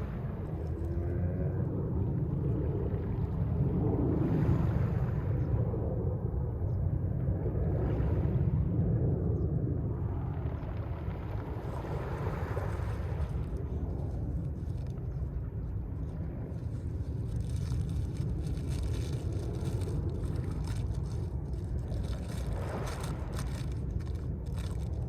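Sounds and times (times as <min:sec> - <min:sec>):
wind rumble on microphone: 0:00.0 - 0:25.0
sea waves breaking ashore: 0:11.0 - 0:25.0.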